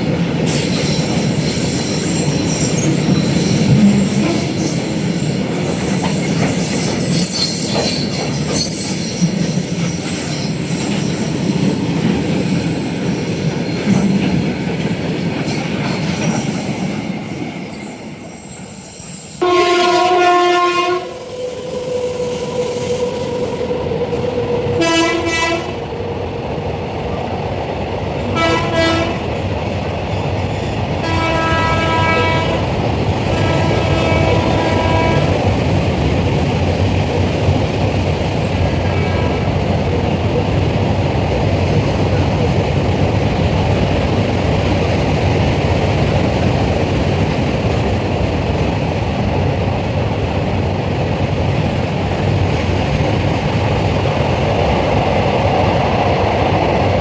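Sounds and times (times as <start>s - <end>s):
train wheels clattering and squealing: 0.0s - 19.4s, 21.1s - 25.2s, 29.5s - 31.3s
train horn blasts: 19.4s - 25.8s, 28.3s - 29.3s, 31.0s - 35.4s, 38.9s - 39.5s.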